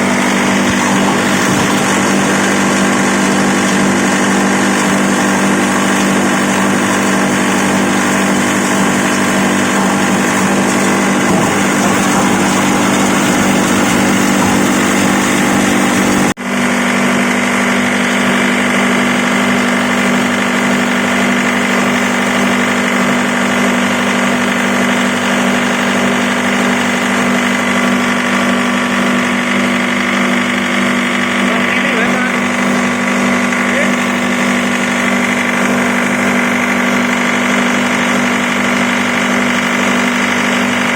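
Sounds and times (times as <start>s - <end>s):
grinding machine humming: 0.0s - 40.9s.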